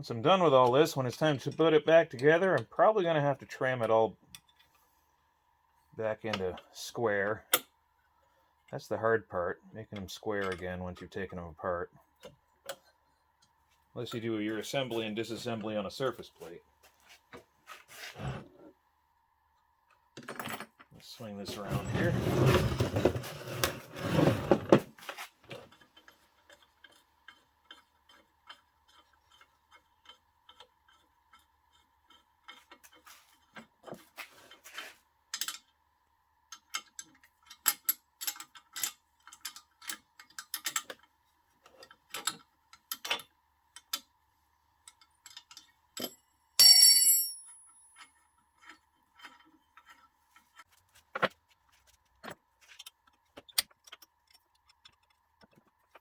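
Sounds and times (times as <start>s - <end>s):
ringing clink of metal: 46.0s - 47.9s.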